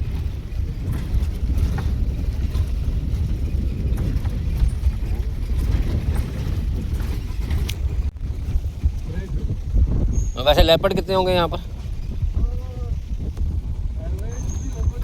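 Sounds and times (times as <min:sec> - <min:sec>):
faint rattles and clicks: 0:00.0 - 0:09.5
vehicle engine and road rumble: 0:00.0 - 0:15.0
wind buffeting microphone: 0:00.0 - 0:15.0.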